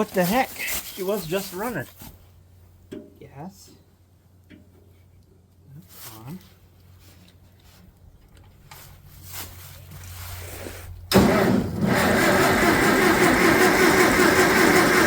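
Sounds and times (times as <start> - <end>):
starter motor cranking: 11.1 - 15.0
tractor engine running: 11.1 - 15.0.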